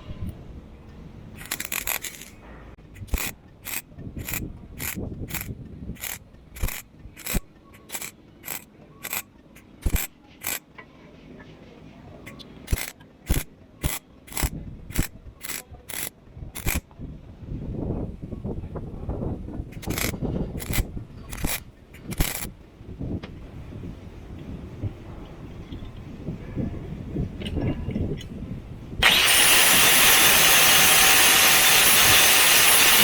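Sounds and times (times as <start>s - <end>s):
sharp mechanical clicks: 1.4s - 10.6s, 12.3s - 16.9s, 19.7s - 22.5s, 29.0s - 33.0s.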